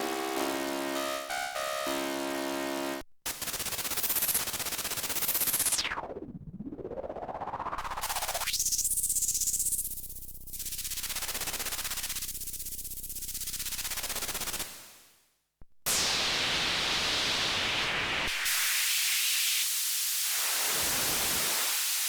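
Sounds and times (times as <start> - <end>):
synthesizer held chord: 0.0 - 3.0
synthesizer noise sweeps: 0.0 - 3.0.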